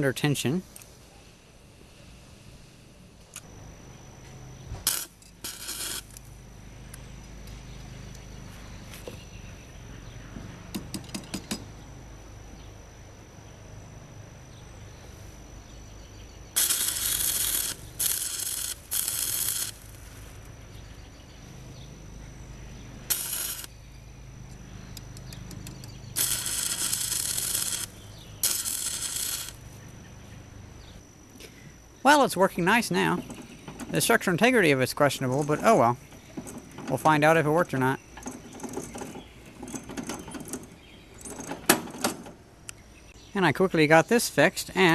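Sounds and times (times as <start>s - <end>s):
electric welding crackle: 4.3s - 7.6s, 16.5s - 20.5s, 23.0s - 23.8s, 25.0s - 30.2s.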